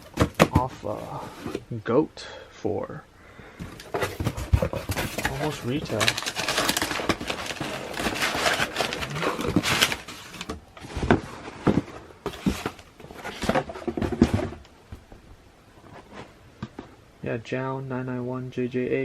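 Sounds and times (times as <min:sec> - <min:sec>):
box knocks and thumps: 0:00.0 - 0:00.8, 0:03.6 - 0:15.2
packing crinkling and rustling: 0:03.6 - 0:14.7.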